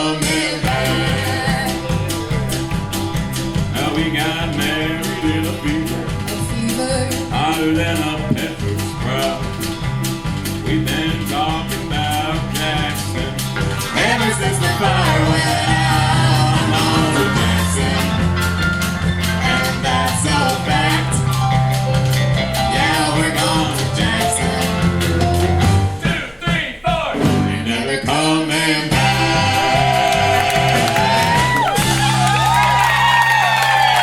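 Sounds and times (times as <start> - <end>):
live country band playing: 0.0 - 26.6
steady bass line: 0.0 - 28.2.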